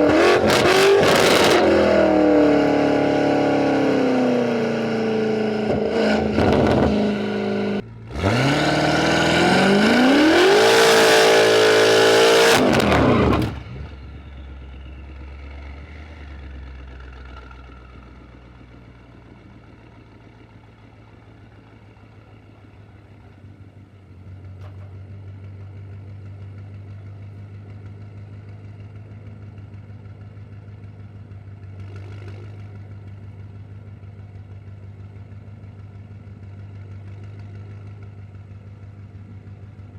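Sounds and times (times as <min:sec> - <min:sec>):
car engine revving at full throttle: 0:00.0 - 0:13.8.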